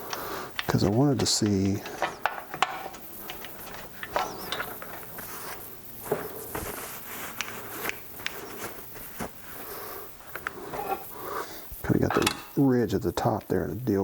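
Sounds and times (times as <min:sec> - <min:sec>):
light metal clicks and scrapes: 0:00.0 - 0:05.7.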